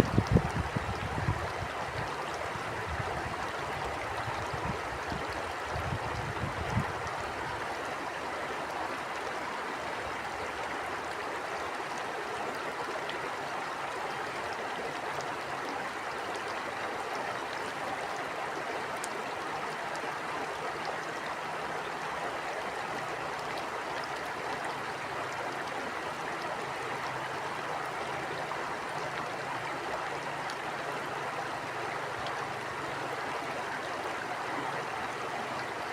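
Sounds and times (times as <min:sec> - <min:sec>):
wind buffeting microphone: 0:00.0 - 0:07.2
stream flowing and rushing: 0:00.0 - 0:35.9.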